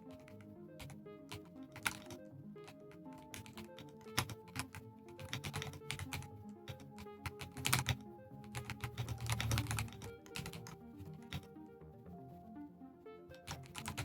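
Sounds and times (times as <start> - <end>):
background music: 0.0 - 14.0
mechanical keyboard key clicks: 0.2 - 2.2, 3.2 - 11.5, 13.4 - 14.0.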